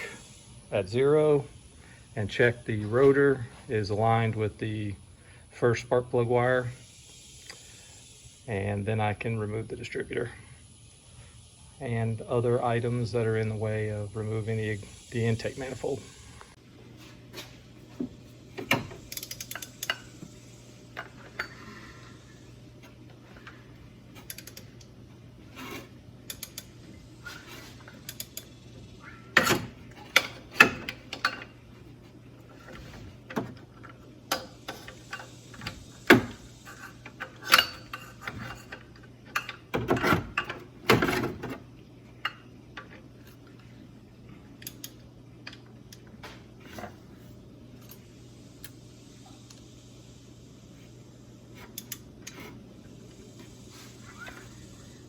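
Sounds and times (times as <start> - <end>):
steady low hum: 0.0 - 55.0
metal tools clinking: 36.6 - 40.6.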